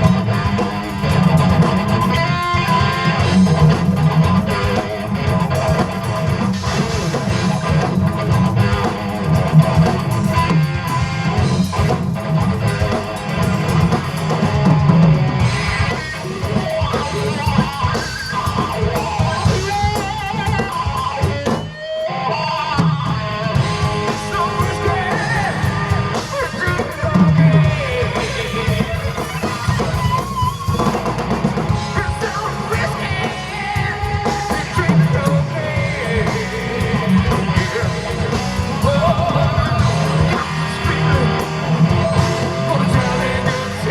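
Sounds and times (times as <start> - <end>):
live rock band playing: 0.0 - 43.9
person singing: 23.6 - 29.8, 31.8 - 43.9.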